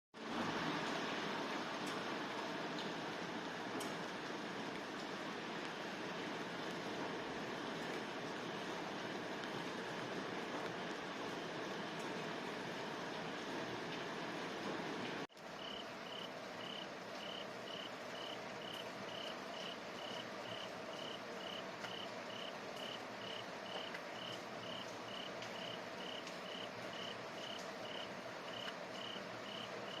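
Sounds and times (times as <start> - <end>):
rain hiss: 0.2 - 30.0
cricket chirping: 15.6 - 30.0.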